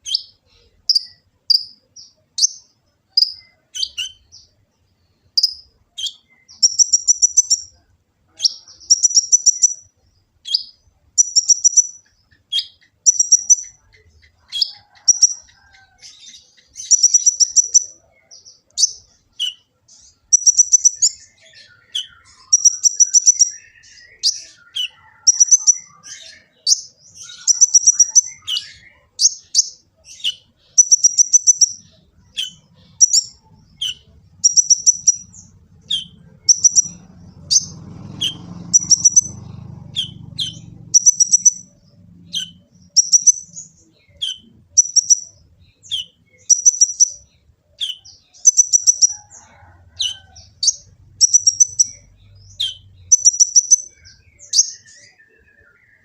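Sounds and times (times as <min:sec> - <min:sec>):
lower bird twittering: 0:00.0 - 0:56.0
sunbird trilling song: 0:00.0 - 0:56.0
sharp bird chips: 0:05.4 - 0:07.8, 0:10.5 - 0:13.8, 0:20.4 - 0:39.4, 0:40.0 - 0:47.2, 0:47.8 - 0:49.2, 0:52.6 - 0:54.8.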